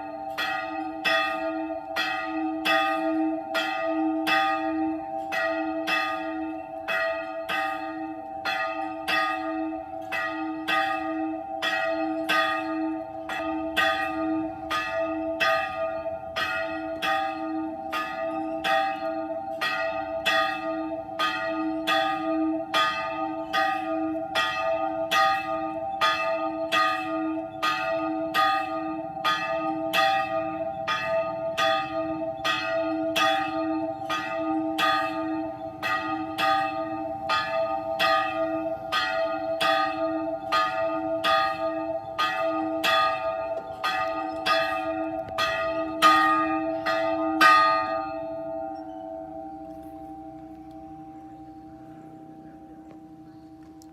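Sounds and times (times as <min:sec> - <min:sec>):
church bell ringing: 0:00.0 - 0:53.9.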